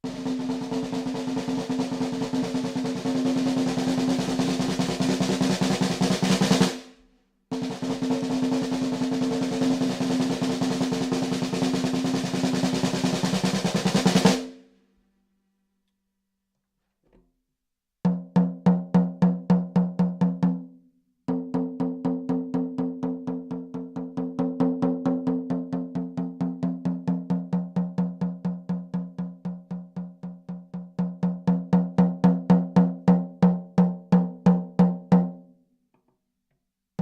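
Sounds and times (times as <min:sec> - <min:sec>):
snare drum strokes: 0:00.0 - 0:14.6.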